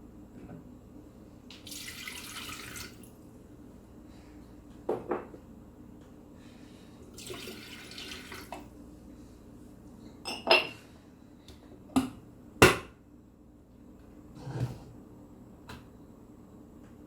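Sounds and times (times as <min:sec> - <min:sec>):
water running: 0:01.5 - 0:03.2, 0:07.1 - 0:08.7.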